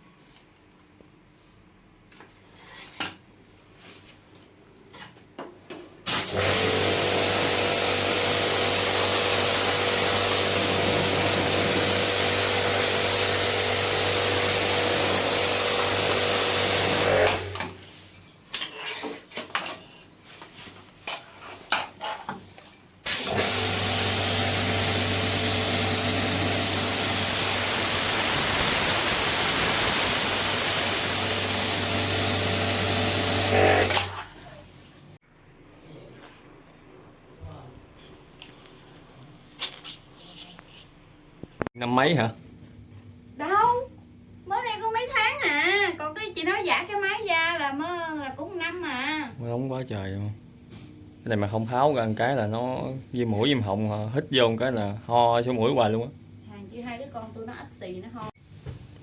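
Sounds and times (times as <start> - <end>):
water jet hissing: 6.1 - 17.5, 23.1 - 33.9, 51.4 - 52.6
pressure washer motor hum: 6.1 - 17.6, 23.1 - 34.2.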